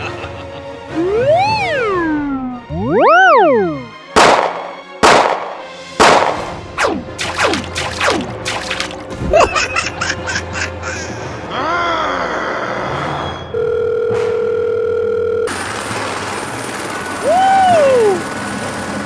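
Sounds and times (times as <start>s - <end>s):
cartoon crashes: 7.2s - 9.2s.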